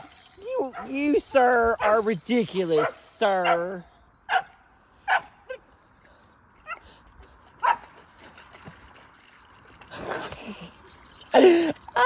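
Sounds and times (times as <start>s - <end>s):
rustling or splashing: 5.8s - 12.0s.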